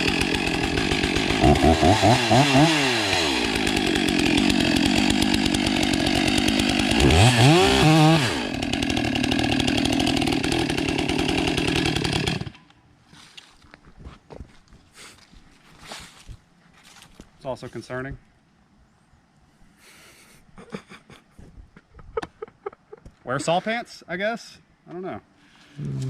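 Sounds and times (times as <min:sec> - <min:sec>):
chainsaw cutting at high revs: 0:00.0 - 0:12.6.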